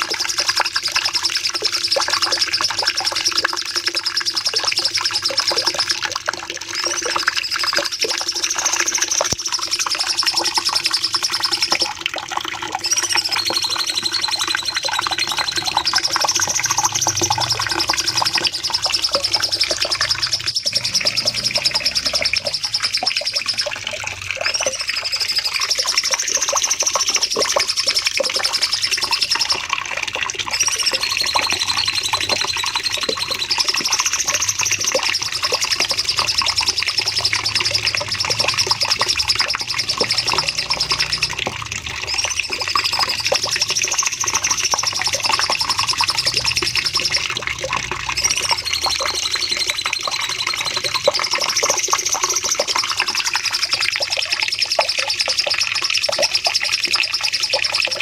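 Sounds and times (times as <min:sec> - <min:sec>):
songbird singing rapid notes: 0:12.8 - 0:23.7.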